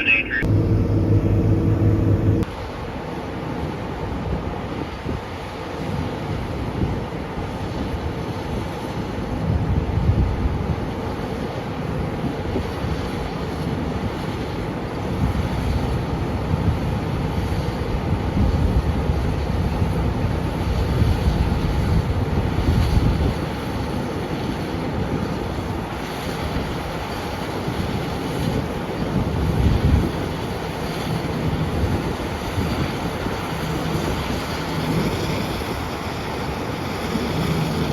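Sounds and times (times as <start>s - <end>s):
vehicle engine running: 0.0s - 2.4s
wind buffeting microphone: 0.5s - 2.5s, 15.1s - 37.9s.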